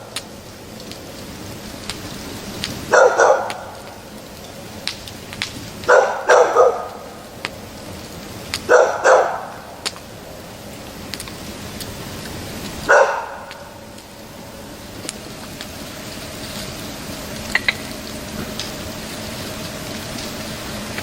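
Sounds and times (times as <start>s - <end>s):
dog barking: 2.9s - 3.8s, 5.9s - 7.1s, 8.6s - 9.7s, 12.9s - 13.7s.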